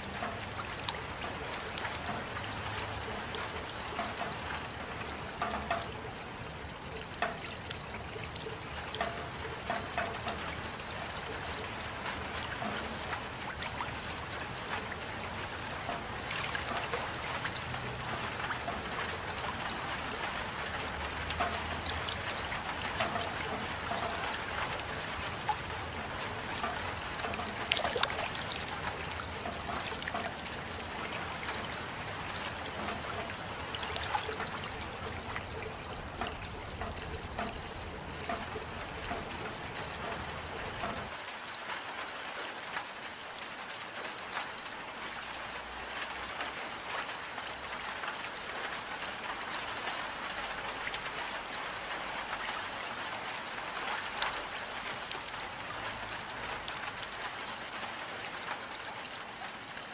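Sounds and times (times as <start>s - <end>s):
steady rain falling: 0.0s - 59.9s
trickling running water: 0.0s - 59.9s.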